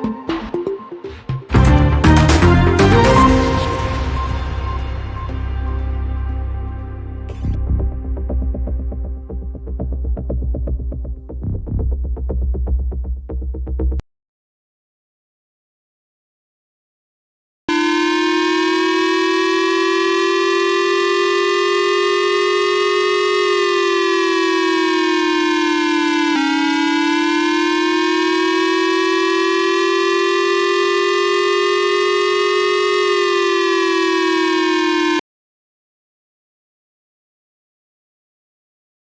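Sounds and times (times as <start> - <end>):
civil defense siren wailing: 0.0 - 8.2, 17.7 - 35.2.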